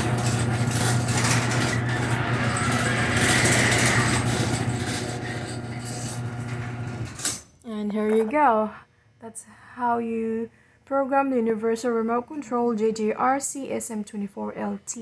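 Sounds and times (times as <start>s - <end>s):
garage door opener motor hum: 0.0s - 7.5s
garage door rattling: 0.0s - 7.5s.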